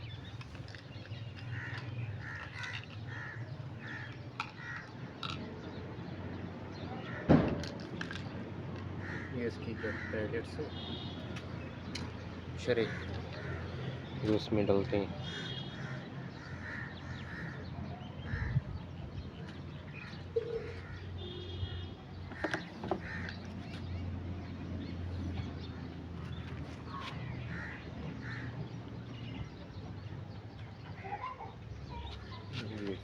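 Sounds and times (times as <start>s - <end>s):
crows cawing: 1.4s - 5.0s, 7.0s - 7.3s, 9.0s - 10.7s, 12.8s - 14.2s, 15.2s - 18.6s, 19.9s - 21.5s, 22.3s - 23.5s, 27.4s - 28.8s.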